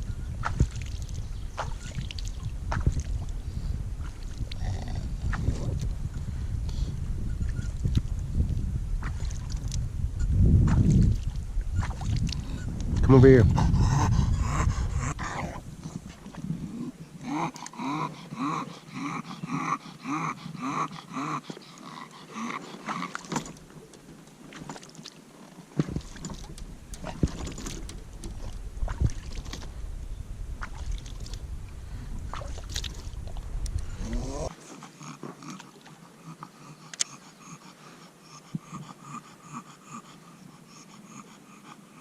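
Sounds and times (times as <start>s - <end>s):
low steady rumble: 0.0s - 17.2s, 26.0s - 34.5s
dog panting hard: 13.0s - 16.0s, 17.5s - 23.2s, 36.1s - 42.0s.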